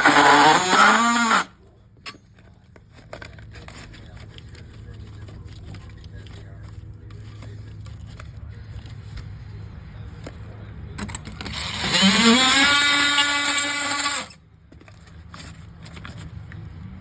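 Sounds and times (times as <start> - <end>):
power tool motor whine: 0.0 - 1.5, 11.4 - 14.4.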